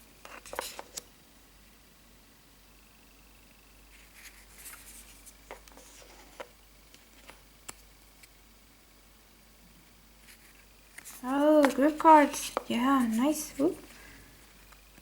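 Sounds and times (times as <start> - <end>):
paper cards rustling and sliding: 0.3 - 1.0, 3.9 - 8.3, 10.2 - 14.7.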